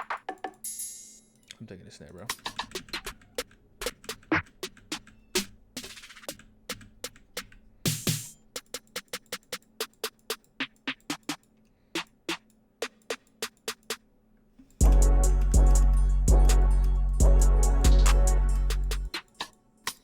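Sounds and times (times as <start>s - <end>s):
hi-hat ticks: 1.4s - 14.0s, 14.7s - 20.0s.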